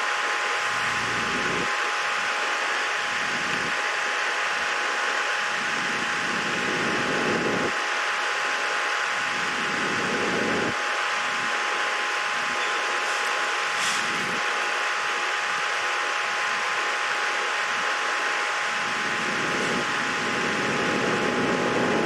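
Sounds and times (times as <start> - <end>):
thin high hum: 0.0 - 7.8, 8.4 - 22.0
low rumble: 0.7 - 1.7
steady hiss: 9.3 - 17.9.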